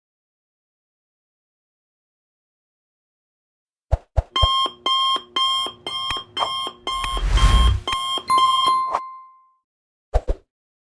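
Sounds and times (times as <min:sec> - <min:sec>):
timer clicks: 0:04.4 - 0:08.8
electronic alarm beeping: 0:04.4 - 0:09.0
noisy burst with low thump: 0:07.0 - 0:07.9.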